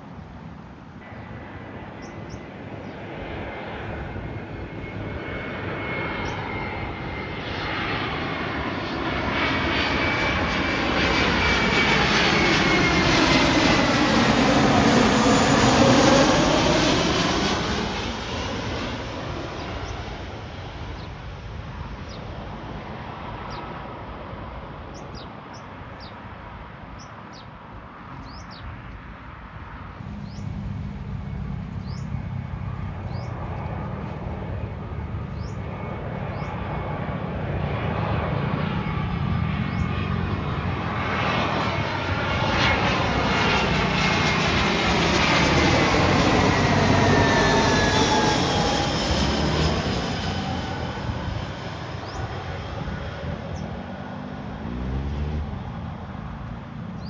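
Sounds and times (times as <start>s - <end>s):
jet engines passing by: 0.0s - 57.0s
high engine whine: 30.0s - 57.0s.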